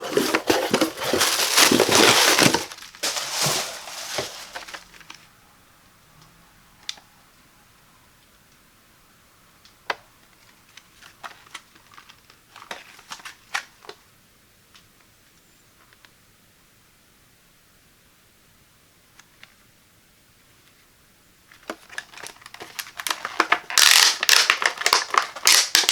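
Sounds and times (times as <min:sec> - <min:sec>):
packaging crinkling: 0:00.0 - 0:05.2, 0:21.7 - 0:25.9.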